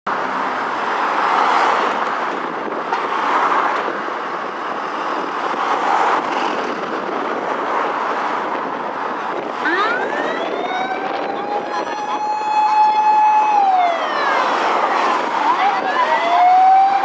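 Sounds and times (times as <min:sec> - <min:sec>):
road vehicles passing: 0:00.1 - 0:17.0
wind on microphone: 0:01.7 - 0:17.0.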